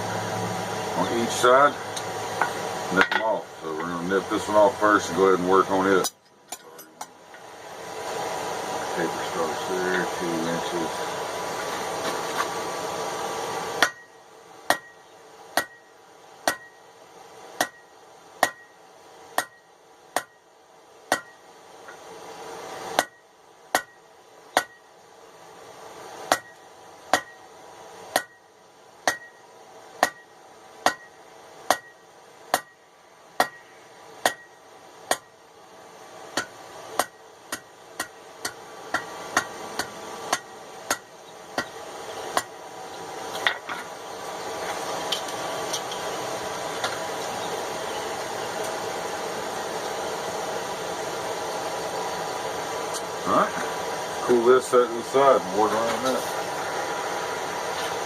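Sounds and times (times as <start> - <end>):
hammer striking steel on anvil: 13.8 - 16.8, 17.6 - 18.8, 19.4 - 20.4, 21.1 - 22.0, 23.0 - 24.8, 26.3 - 27.4, 28.1 - 28.4, 29.0 - 29.4, 30.0 - 32.8, 33.4 - 35.3, 36.3 - 42.6.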